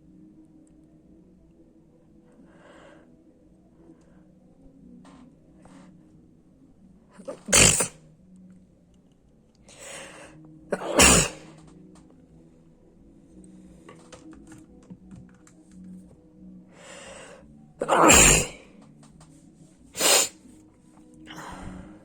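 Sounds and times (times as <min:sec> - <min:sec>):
person sneezing: 0:07.2 - 0:08.0, 0:10.8 - 0:11.5, 0:17.8 - 0:18.6, 0:20.0 - 0:20.3.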